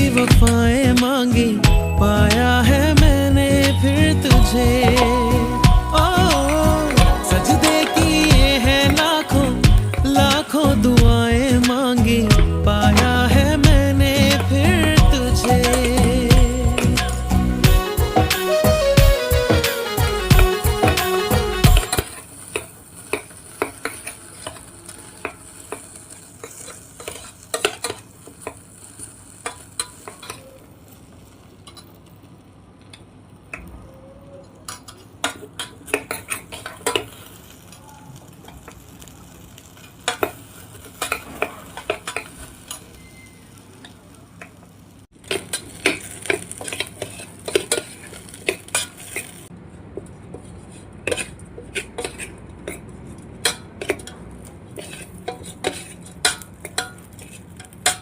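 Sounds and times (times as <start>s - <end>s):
faint oil sizzle: 0.0s - 49.5s, 53.4s - 58.0s
metal utensil scraping kettle: 53.5s - 58.0s.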